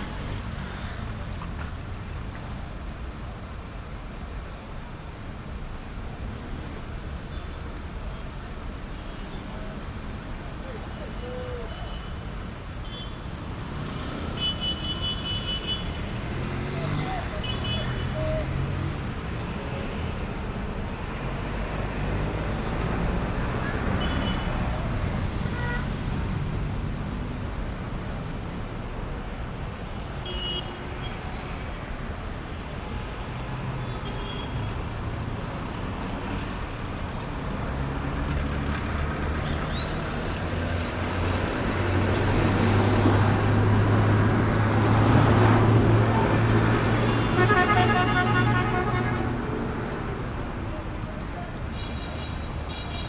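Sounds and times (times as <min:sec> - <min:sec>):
cars passing: 0:13.2 - 0:30.6, 0:31.5 - 0:51.7
air brake hiss: 0:42.5 - 0:43.6.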